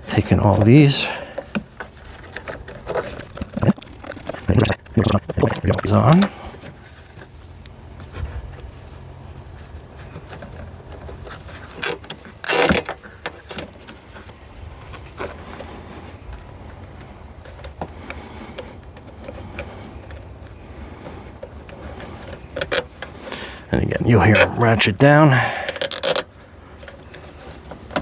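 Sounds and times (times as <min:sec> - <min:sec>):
steady low hum: 0:00.0 - 0:27.7
zip tie ratcheting rasp: 0:11.6 - 0:13.0, 0:25.7 - 0:26.2
plastic clicks: 0:25.7 - 0:27.2.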